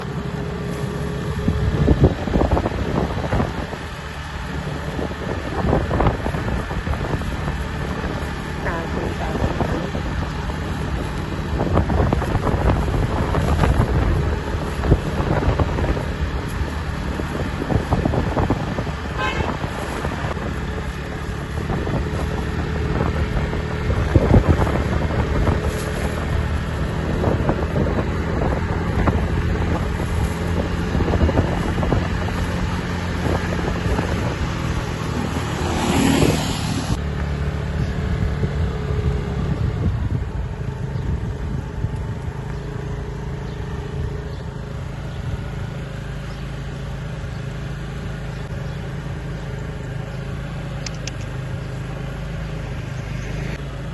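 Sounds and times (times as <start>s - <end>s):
wind buffeting microphone: 0.0s - 48.8s
vehicle engine running: 0.0s - 53.9s
rush of noise: 30.8s - 37.7s.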